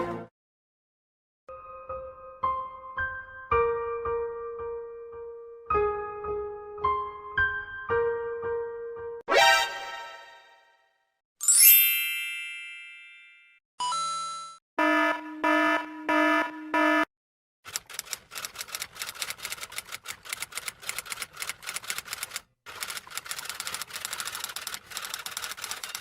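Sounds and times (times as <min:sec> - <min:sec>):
bright chime ringing: 0:11.4 - 0:14.6
loud electronic beeps: 0:14.8 - 0:17.1
rapid irregular clicks: 0:17.7 - 0:26.0.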